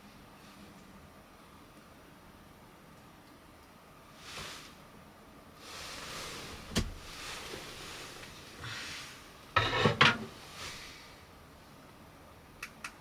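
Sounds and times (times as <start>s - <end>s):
soft rustles: 5.6s - 9.3s, 10.3s - 11.1s.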